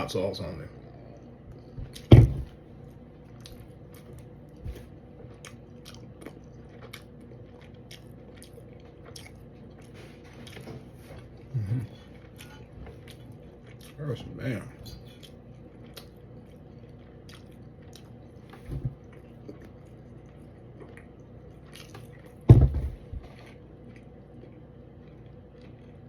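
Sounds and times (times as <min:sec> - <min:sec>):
person chewing: 0:00.8 - 0:14.0, 0:14.9 - 0:26.0
loud thump: 0:02.1 - 0:02.5, 0:22.5 - 0:23.0.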